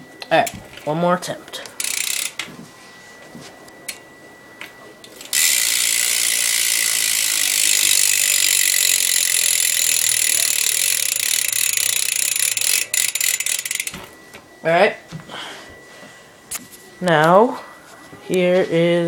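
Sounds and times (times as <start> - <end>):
bicycle hub ratcheting whir: 0.0 - 2.6, 3.7 - 4.2, 5.0 - 14.7.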